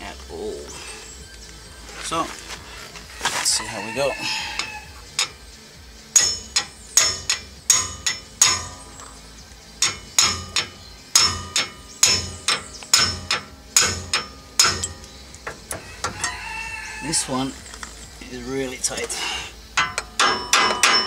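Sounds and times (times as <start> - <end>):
hammer striking metal: 6.1 - 9.0, 9.8 - 16.2, 19.8 - 21.0.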